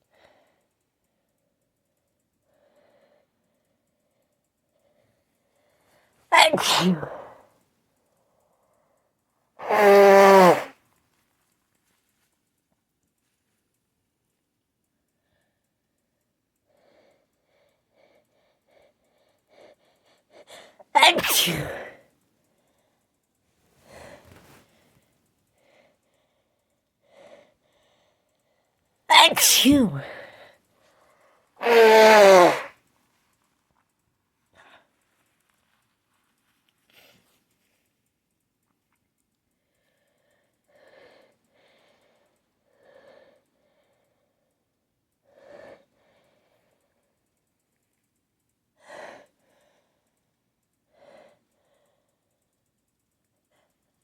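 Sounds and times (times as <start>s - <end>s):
soft breaths: 0.0s - 9.7s, 10.5s - 31.7s, 32.6s - 54.0s
person sneezing: 6.3s - 7.4s, 9.6s - 10.7s, 20.5s - 22.0s, 29.1s - 30.5s, 31.6s - 32.8s
person gasping and sighing: 20.5s - 21.9s, 29.1s - 30.4s.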